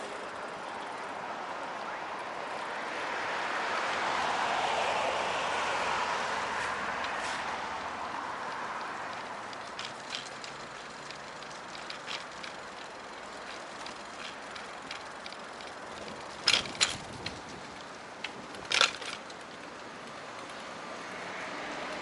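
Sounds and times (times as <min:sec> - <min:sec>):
distant traffic hum: 0:00.0 - 0:22.0.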